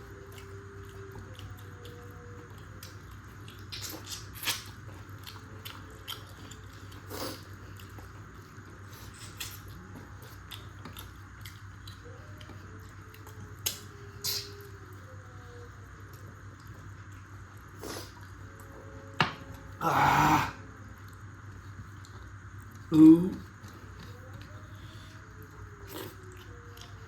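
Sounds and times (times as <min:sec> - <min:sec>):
steady low hum: 0:00.0 - 0:27.0
chewing and mouth smacks: 0:00.3 - 0:14.7.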